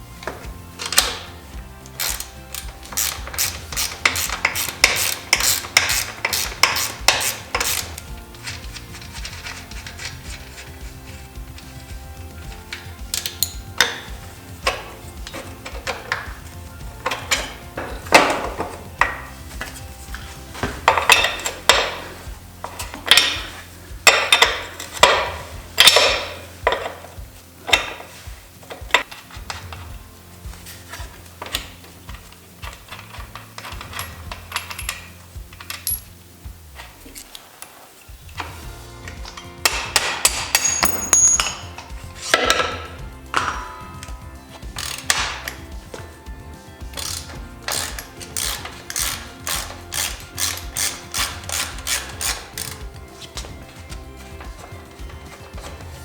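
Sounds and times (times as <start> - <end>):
metal tools clanking and rattling: 0.4 - 10.7, 12.5 - 30.0, 30.9 - 36.2, 38.4 - 46.2, 46.8 - 56.0
ratchet wrench clicking: 0.8 - 11.8, 12.5 - 29.8, 30.9 - 36.2, 39.0 - 46.0, 46.8 - 53.4.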